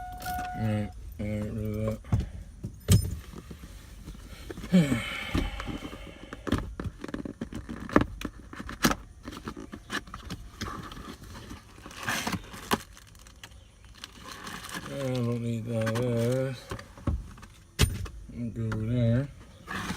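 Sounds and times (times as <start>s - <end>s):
scrapes and rustles: 5.6s - 17.7s, 19.3s - 19.9s.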